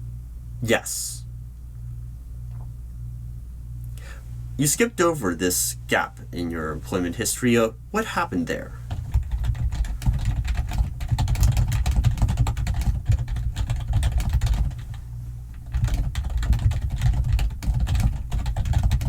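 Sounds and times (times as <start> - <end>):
steady low hum: 0.0 - 19.0
fast keyboard typing: 8.9 - 15.0, 15.6 - 19.0.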